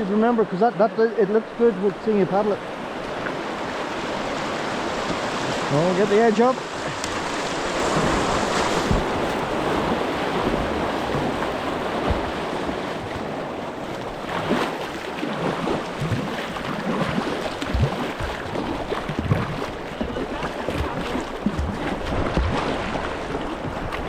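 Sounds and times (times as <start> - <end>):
river current rushing: 0.0 - 24.0
short water splashes: 2.4 - 24.0.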